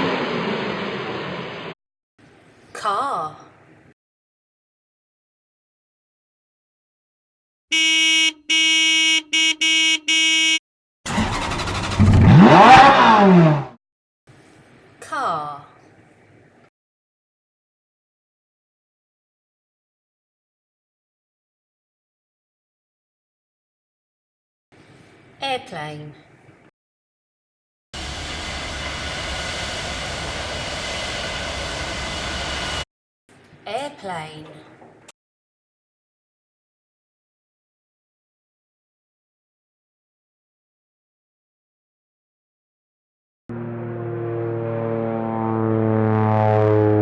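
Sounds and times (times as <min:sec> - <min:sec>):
airplane engines running: 0:00.0 - 0:01.7, 0:28.0 - 0:32.8, 0:43.5 - 0:47.0
car horn honking: 0:07.7 - 0:10.6
car engine revving: 0:11.1 - 0:13.8, 0:43.5 - 0:47.0.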